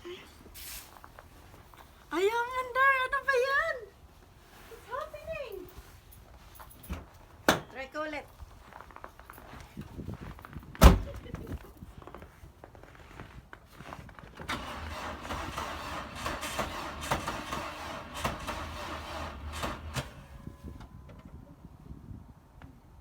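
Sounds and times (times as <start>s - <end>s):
car engine cranking with clicks: 14.4s - 20.9s.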